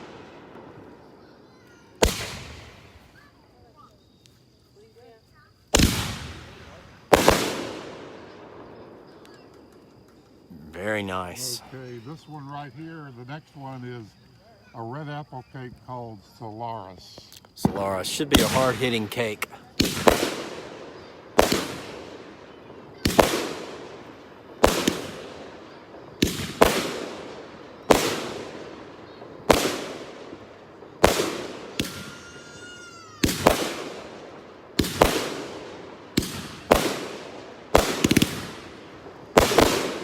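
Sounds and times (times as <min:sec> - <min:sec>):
fireworks booming: 0:00.0 - 0:03.8, 0:05.7 - 0:11.8, 0:17.6 - 0:40.0
firework falling whistle: 0:31.7 - 0:33.8.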